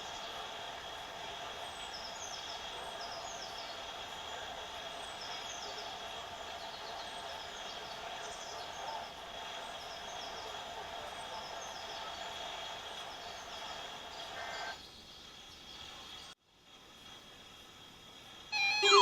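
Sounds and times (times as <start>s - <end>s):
steady hiss: 0.0s - 18.6s
faint falling chirps: 18.6s - 19.0s.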